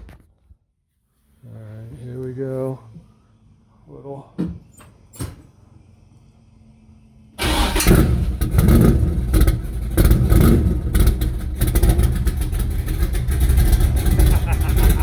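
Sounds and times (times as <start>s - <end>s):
car engine starting and revving: 7.0s - 15.0s.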